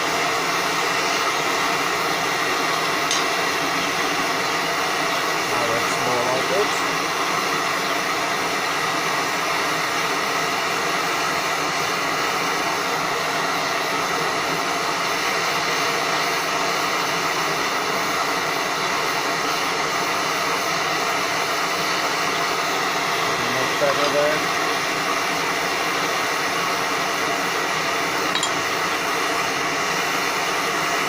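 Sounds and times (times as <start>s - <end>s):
gas torch flame rushing: 0.0s - 31.0s.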